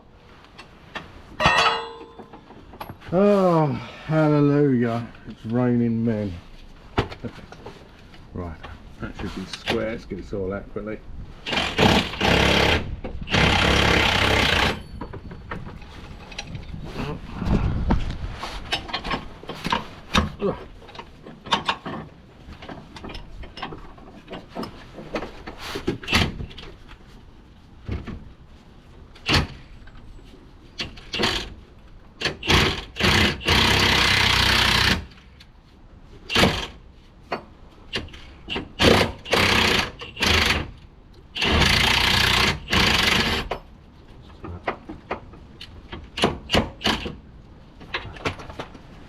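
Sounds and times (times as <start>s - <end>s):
tools and metal parts clinking: 1.4s - 3.0s, 14.5s - 16.8s, 18.7s - 24.9s
impact wrench running: 11.5s - 14.8s.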